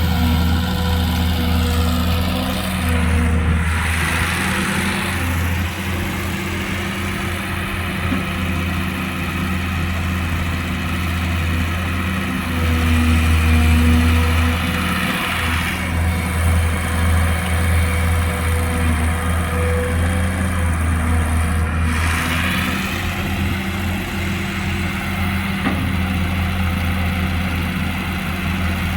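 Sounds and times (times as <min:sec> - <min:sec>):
excavator diesel engine humming: 0:00.0 - 0:28.9.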